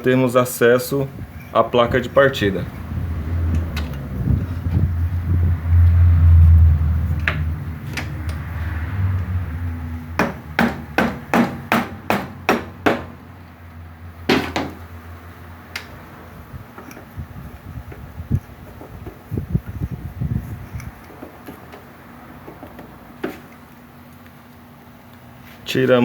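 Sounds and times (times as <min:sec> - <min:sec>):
low rumble of handling noise: 0:00.0 - 0:26.0
hammer striking metal puller: 0:14.3 - 0:14.8.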